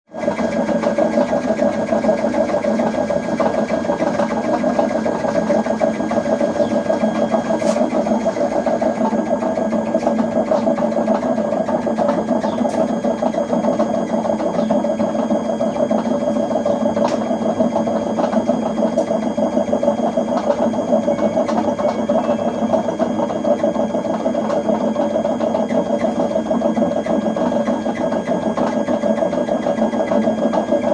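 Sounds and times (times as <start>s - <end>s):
washing machine rattling: 0.1s - 30.9s.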